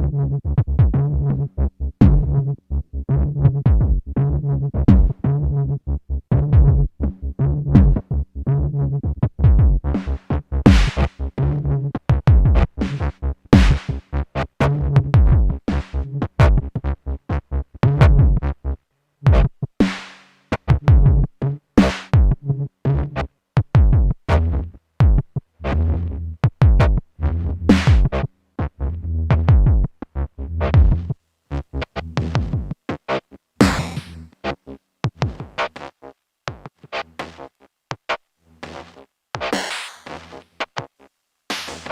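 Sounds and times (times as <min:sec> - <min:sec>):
low synth bass notes: 0:00.0 - 0:18.7, 0:23.8 - 0:32.7
electronic drum hits: 0:10.7 - 0:11.0, 0:13.6 - 0:13.9, 0:33.6 - 0:34.1, 0:39.6 - 0:40.1.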